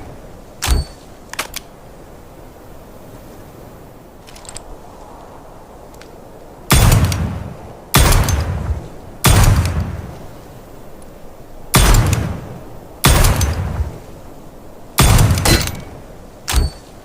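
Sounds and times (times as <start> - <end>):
faint clicks: 4.2 - 6.2
revolver gunshots: 6.7 - 10.0, 11.8 - 14.0, 15.0 - 15.9.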